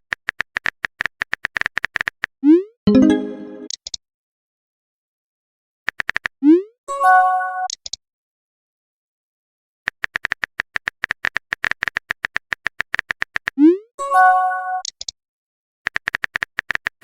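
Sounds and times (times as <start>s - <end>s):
chime-like tone: 2.9s - 3.7s.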